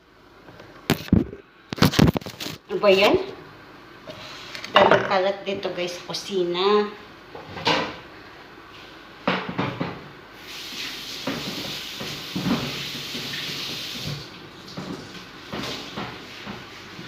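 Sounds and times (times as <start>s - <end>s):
tap water running into sink: 10.5s - 16.6s.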